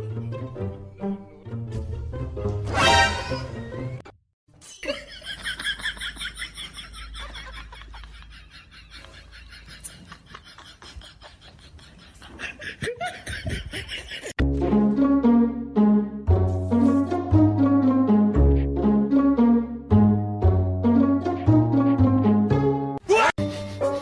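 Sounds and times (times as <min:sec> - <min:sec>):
orchestral music with plucked strings: 0:00.0 - 0:04.0, 0:14.4 - 0:24.0
people laughing: 0:04.8 - 0:14.4.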